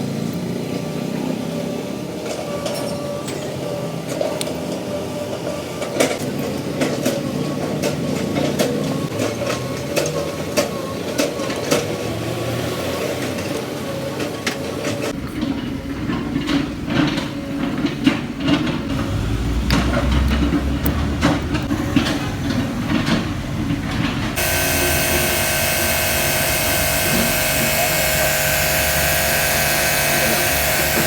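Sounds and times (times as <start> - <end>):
pressure washer motor running: 24.4 - 31.0.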